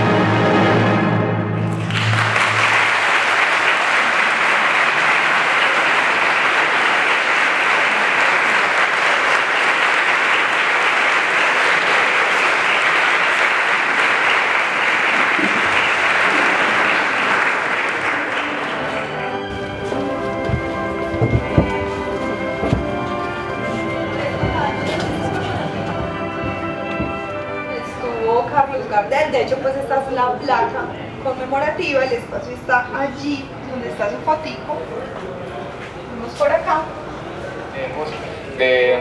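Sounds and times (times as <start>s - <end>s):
audience applause: 1.6s - 27.7s
orchestra chord: 17.8s - 28.8s.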